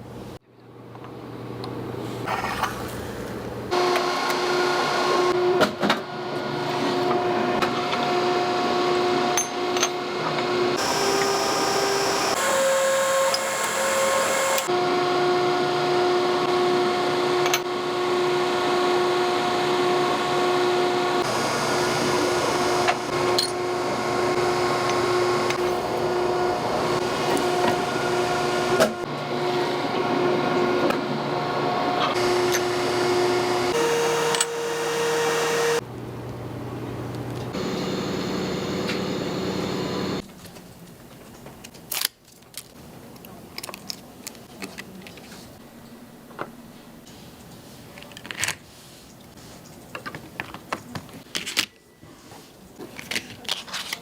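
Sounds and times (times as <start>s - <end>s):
factory machinery hum and whine: 9.8s - 40.2s.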